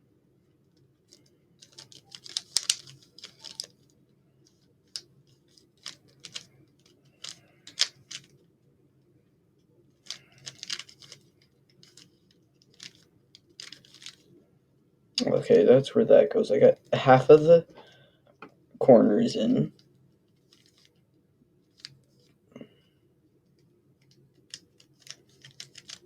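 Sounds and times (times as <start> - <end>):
rubik's cube clicking: 1.2 - 3.8, 4.4 - 8.4, 10.0 - 14.2, 20.5 - 20.9, 21.7 - 22.3, 24.0 - 26.0.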